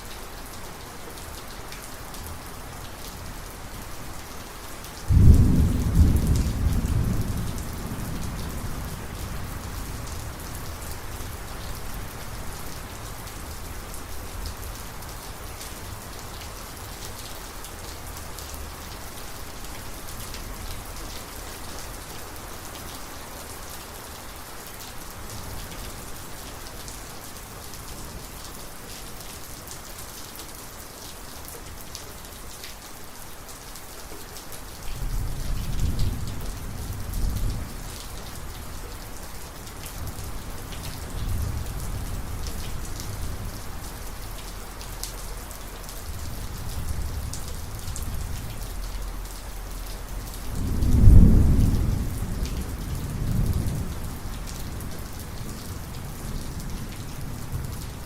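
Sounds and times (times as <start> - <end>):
heavy rain: 0.0 - 58.0
thunderclap: 5.1 - 8.4, 50.6 - 52.6
distant thunder rumble: 5.1 - 10.2, 50.6 - 54.2.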